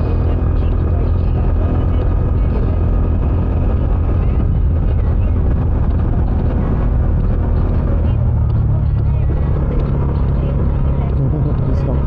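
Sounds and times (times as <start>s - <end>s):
motorcycle engine running: 0.0s - 12.0s
wind rush: 0.0s - 12.0s
person talking: 9.0s - 12.0s.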